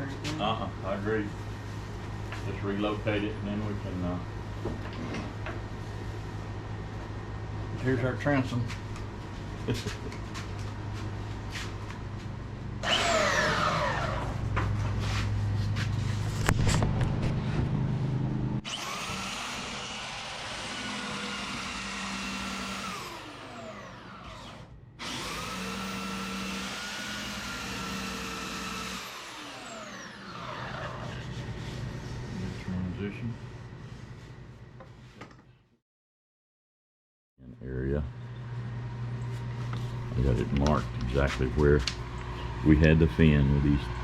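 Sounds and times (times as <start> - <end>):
low shop hum: 0.0 - 35.8, 37.4 - 44.0
power tool whining: 12.8 - 14.6, 18.6 - 31.3.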